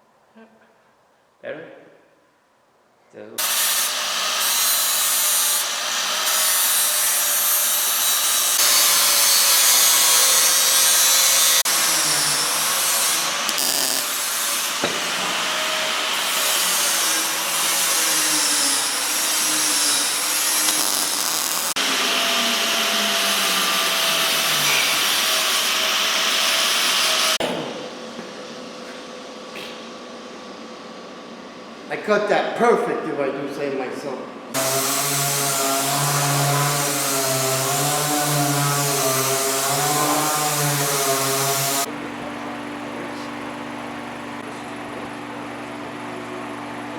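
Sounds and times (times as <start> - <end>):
power tool cutting steel: 3.4 - 27.4, 34.6 - 41.9.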